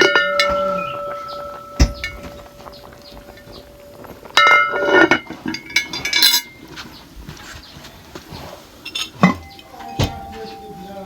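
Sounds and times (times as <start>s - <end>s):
farm animal calling: 0.0s - 5.1s, 9.2s - 11.0s.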